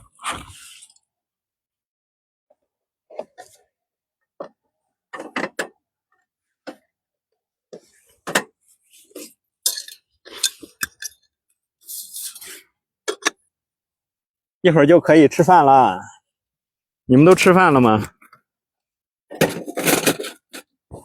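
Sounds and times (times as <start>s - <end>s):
pots and utensils clinking: 9.7s - 11.2s.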